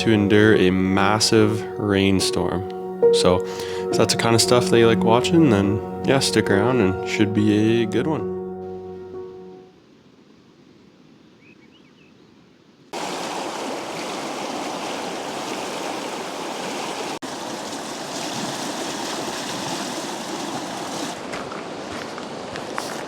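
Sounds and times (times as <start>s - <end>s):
river water rushing: 13.0s - 23.0s.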